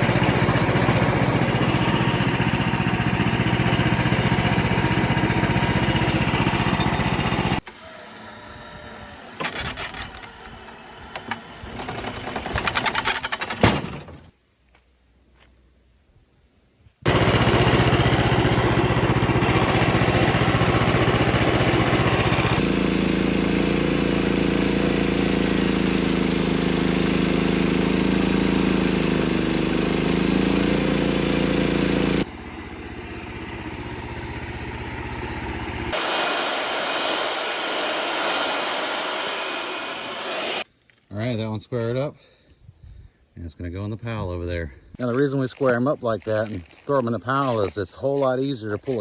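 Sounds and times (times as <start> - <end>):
bandsaw mill cutting log: 0.0 - 14.0, 17.1 - 40.7.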